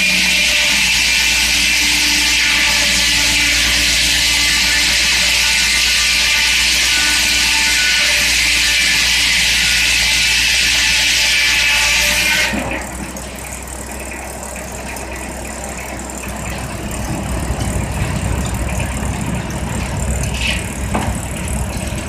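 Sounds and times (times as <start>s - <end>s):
machinery squeal: 0.0s - 14.3s
circular saw whining: 0.0s - 22.0s
machinery low rumble: 0.0s - 22.0s.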